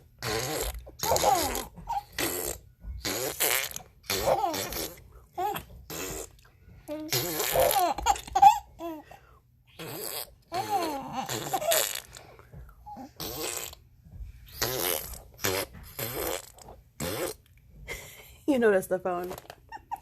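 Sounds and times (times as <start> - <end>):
fart sound effects: 0.2 - 8.4, 9.7 - 12.3, 13.0 - 17.5
baby laughing and squealing: 1.0 - 2.5, 4.1 - 6.3, 6.9 - 9.2, 9.8 - 12.1, 19.7 - 20.0.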